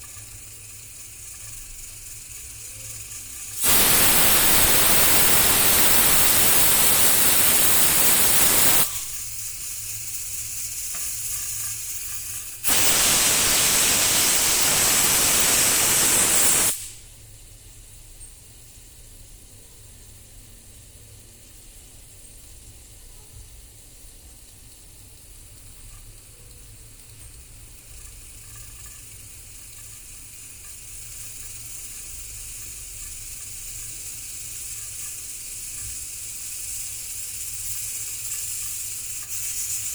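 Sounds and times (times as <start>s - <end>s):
pressure cooker venting steam: 0.0s - 17.2s, 24.0s - 39.9s.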